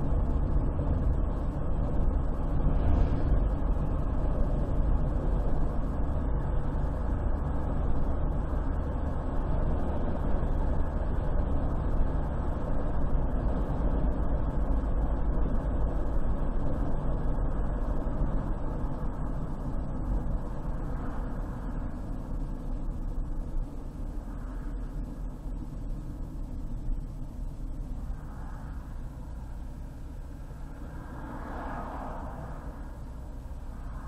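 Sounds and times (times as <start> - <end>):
car engine: 0.0 - 34.0
tyres rumbling on road: 0.0 - 34.0.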